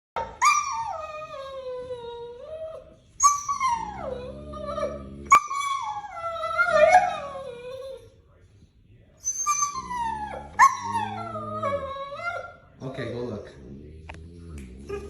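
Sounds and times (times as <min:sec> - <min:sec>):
dog whining howls: 0:00.3 - 0:08.1, 0:09.2 - 0:12.5.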